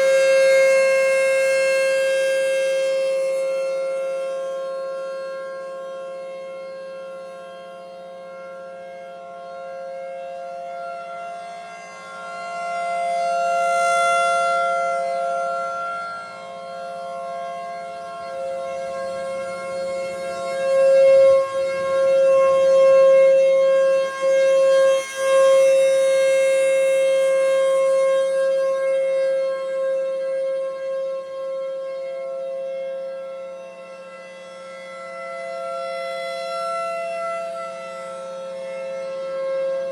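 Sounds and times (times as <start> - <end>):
outdoor warning sirens: 0.0 - 39.9.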